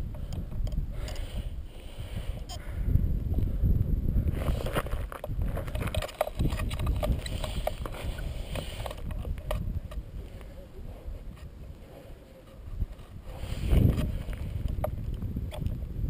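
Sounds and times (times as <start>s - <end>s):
low rumbling wind: 0.0s - 16.0s
clicks and crackles: 4.5s - 10.6s, 12.4s - 15.8s.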